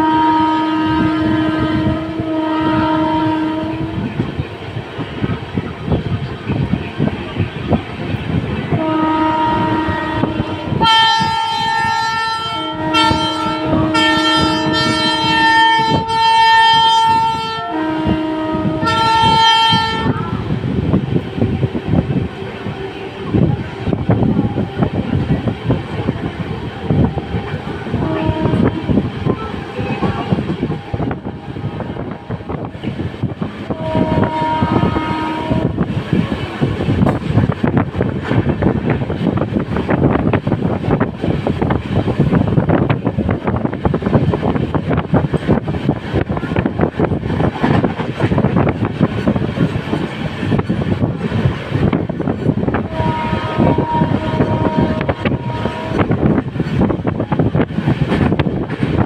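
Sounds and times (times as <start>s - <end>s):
locomotive horn blast: 0.0s - 4.2s, 8.7s - 20.6s, 26.8s - 32.7s, 33.3s - 35.9s, 52.7s - 57.6s
train coach rattling: 0.0s - 59.0s
wind noise: 0.0s - 59.0s.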